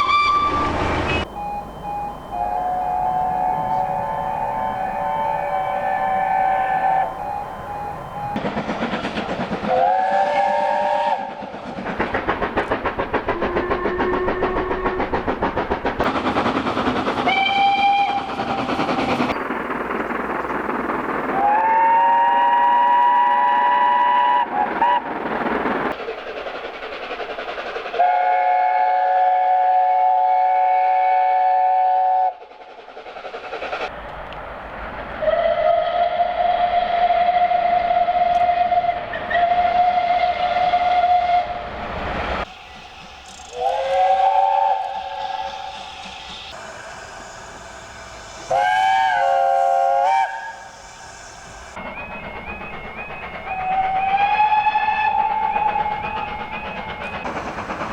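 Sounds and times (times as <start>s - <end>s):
single-note steam whistle: 0.0s - 8.4s, 9.7s - 11.4s, 28.0s - 32.4s, 43.3s - 51.8s, 53.4s - 56.8s
steam locomotive chime whistles: 0.0s - 11.4s, 17.3s - 18.7s, 21.3s - 25.1s, 28.0s - 32.4s, 42.4s - 57.9s
steam train chugging on rails: 0.0s - 57.9s.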